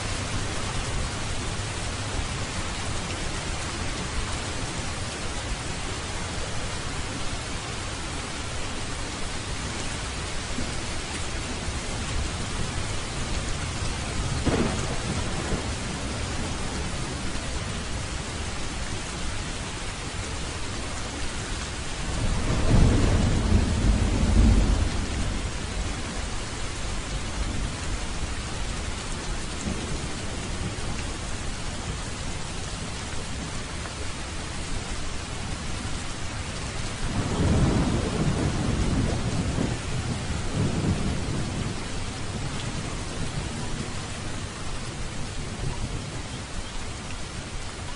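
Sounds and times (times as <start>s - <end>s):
steady rain: 0.0s - 47.9s
rolling thunder: 13.7s - 17.3s, 22.1s - 26.3s, 37.0s - 43.8s.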